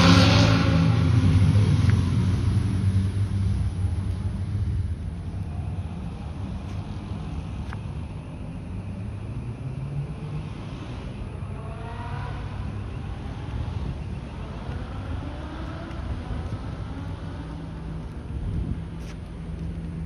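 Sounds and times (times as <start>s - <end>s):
motorcycle engine revving: 0.0s - 4.3s
motorcycle engines rumbling: 0.0s - 20.0s.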